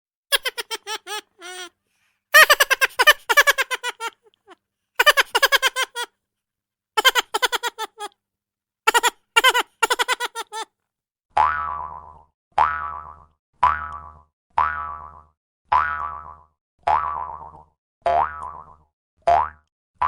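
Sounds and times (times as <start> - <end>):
high-pitched cartoonish giggling: 0.3 - 1.7, 2.4 - 6.1, 7.0 - 8.1, 8.9 - 10.7.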